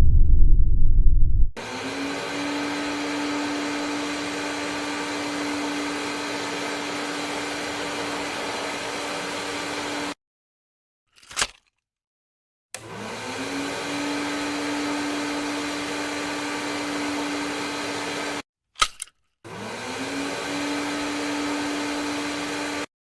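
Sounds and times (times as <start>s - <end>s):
vacuum cleaner motor humming: 1.6s - 10.2s, 12.8s - 18.4s, 19.5s - 22.9s.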